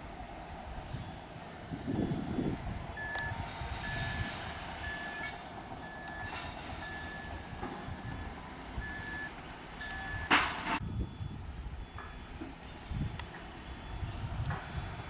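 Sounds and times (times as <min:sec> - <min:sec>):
reversing alarm beeping: 0:02.0 - 0:15.0
loud burst of noise: 0:02.3 - 0:10.8.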